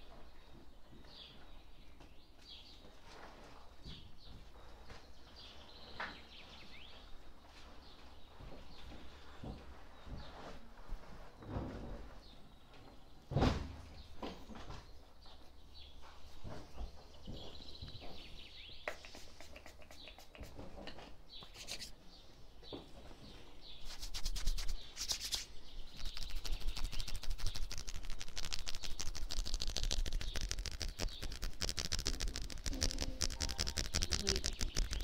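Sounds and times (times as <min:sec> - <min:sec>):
birds chirping: 0:13.9 - 0:35.0
hands rubbing and tapping skin: 0:18.8 - 0:22.0, 0:23.8 - 0:35.0.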